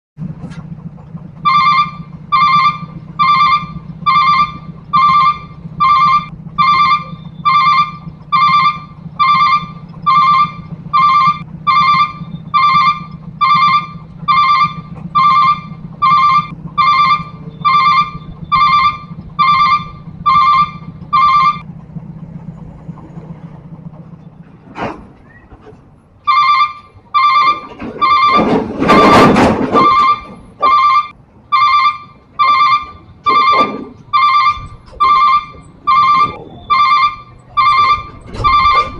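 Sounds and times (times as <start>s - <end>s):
level-crossing warning bell: 29.8s - 38.9s.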